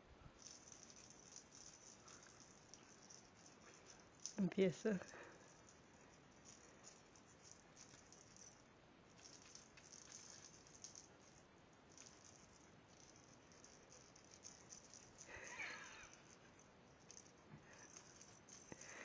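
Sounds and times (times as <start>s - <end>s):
small bell jingling: 0.4s - 19.0s.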